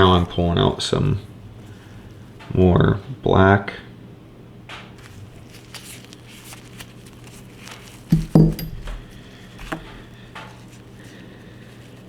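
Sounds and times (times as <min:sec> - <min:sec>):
light clicks and rustles: 0:04.7 - 0:12.0
hard objects knocking on table: 0:08.1 - 0:10.0.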